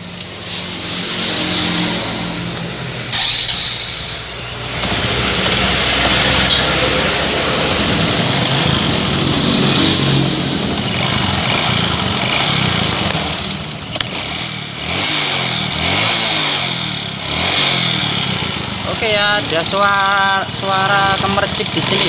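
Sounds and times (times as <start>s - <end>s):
rough rattling motorcycle engine: 0.0s - 22.0s.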